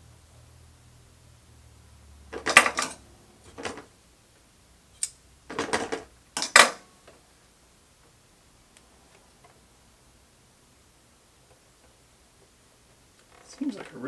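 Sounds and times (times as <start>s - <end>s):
faint low hum: 0.0s - 14.0s
small hard parts clattering: 2.3s - 3.9s, 5.5s - 7.2s.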